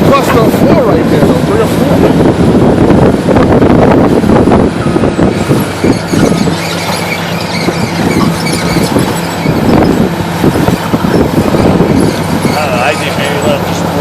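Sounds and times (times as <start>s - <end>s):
excavator diesel engine droning: 0.0s - 14.0s
high squeal: 4.8s - 13.6s.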